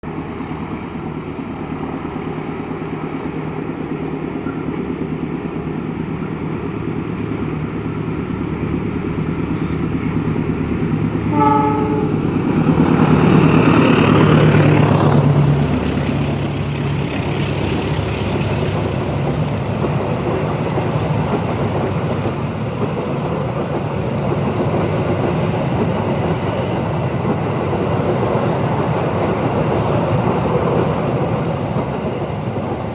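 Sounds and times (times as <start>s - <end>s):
train rumbling past: 0.0s - 32.9s
train horn toot: 11.1s - 14.8s.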